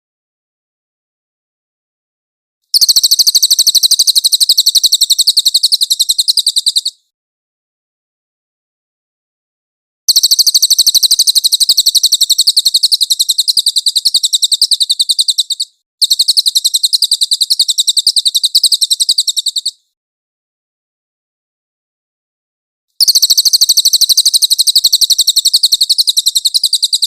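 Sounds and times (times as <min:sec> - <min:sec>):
songbird high-pitched trills: 0:02.8 - 0:07.0, 0:10.1 - 0:19.8, 0:23.0 - 0:27.0.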